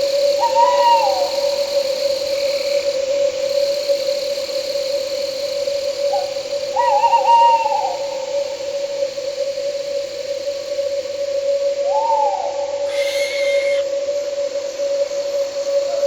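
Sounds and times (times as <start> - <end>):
night insects buzzing: 0.0 - 16.0
owl hooting: 11.9 - 14.2.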